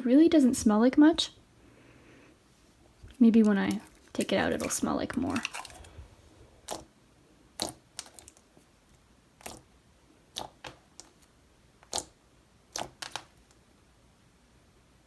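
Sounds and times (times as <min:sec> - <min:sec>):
slime clicking and popping: 0:07.5 - 0:08.4, 0:09.4 - 0:09.7, 0:10.3 - 0:13.4.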